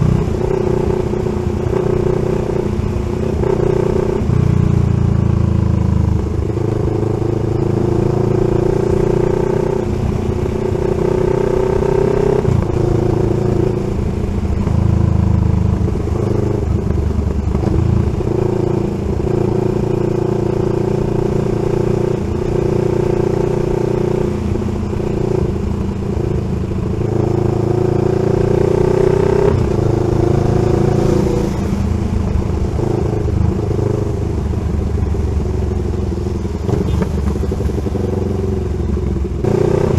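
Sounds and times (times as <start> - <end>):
motorcycle engine revving through gears: 0.0 - 39.9.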